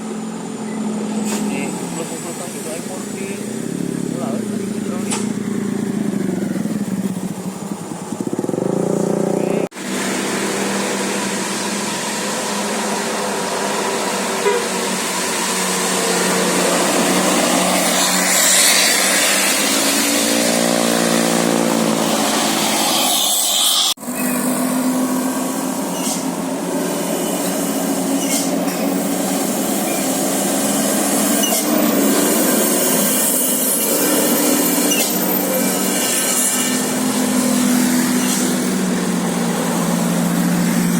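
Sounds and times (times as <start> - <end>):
traffic noise: 0.0 - 40.9
bus multi-tone horn tune: 14.3 - 15.0.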